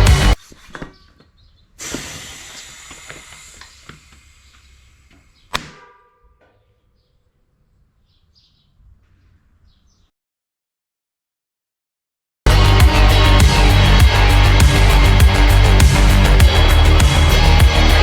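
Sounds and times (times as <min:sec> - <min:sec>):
air hissing into a tire: 0:01.8 - 0:05.5.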